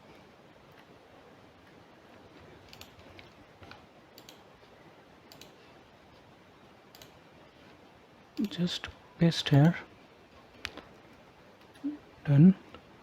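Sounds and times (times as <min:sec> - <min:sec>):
faint room hiss: 0:00.0 - 0:13.0
mouse and keyboard clicks: 0:05.3 - 0:05.6.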